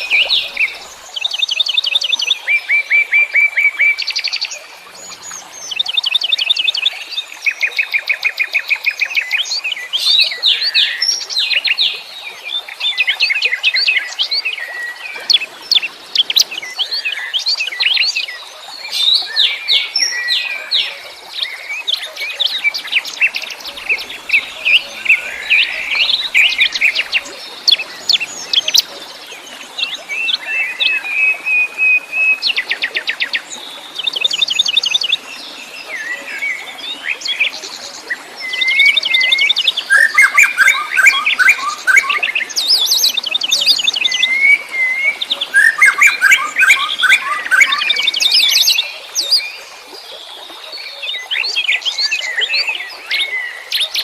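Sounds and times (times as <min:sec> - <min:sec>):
songbirds chirping and singing: 0:00.0 - 0:01.9, 0:14.0 - 0:31.4, 0:35.8 - 0:49.7.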